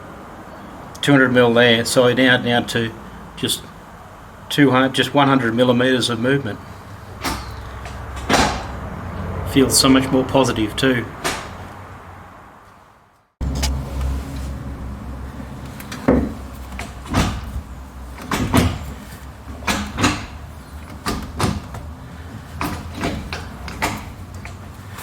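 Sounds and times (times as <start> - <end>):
gear stick clunking: 6.9 - 9.3, 11.2 - 11.8, 13.4 - 25.0.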